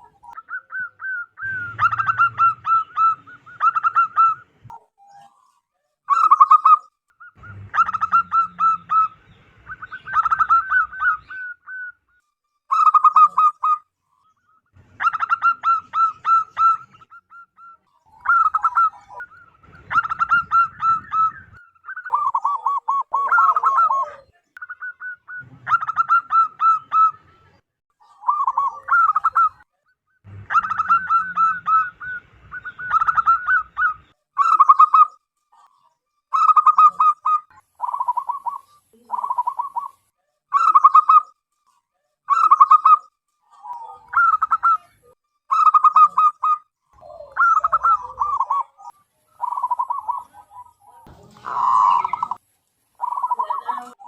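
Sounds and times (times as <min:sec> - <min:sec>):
dove cooing: 0:00.0 - 0:05.4, 0:06.1 - 0:13.8, 0:14.8 - 0:29.6, 0:30.3 - 0:41.2, 0:42.3 - 0:54.0.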